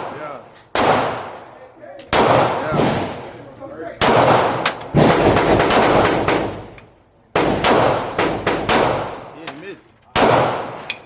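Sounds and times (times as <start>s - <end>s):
gunshots with ringing tail: 0.0s - 1.4s, 2.1s - 3.4s, 4.0s - 6.7s, 7.4s - 9.4s, 10.2s - 10.9s.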